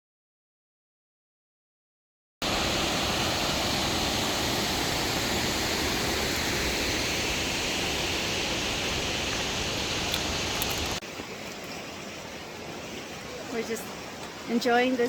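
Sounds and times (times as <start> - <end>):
waterfall rushing: 2.4 - 11.4
creek running: 2.4 - 15.0.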